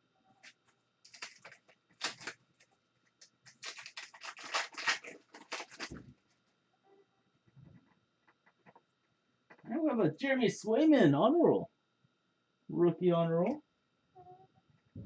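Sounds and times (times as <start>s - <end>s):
trading cards clicking and rustling: 0.4s - 6.1s.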